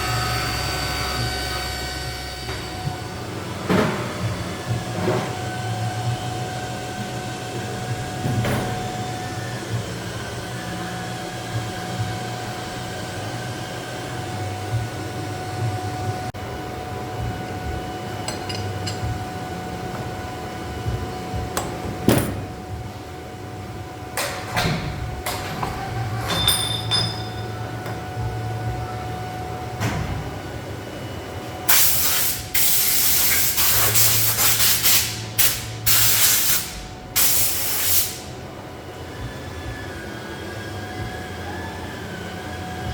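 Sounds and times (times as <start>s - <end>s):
steady machine hum: 0.0s - 42.9s
loud bursts of hissing: 31.7s - 38.3s.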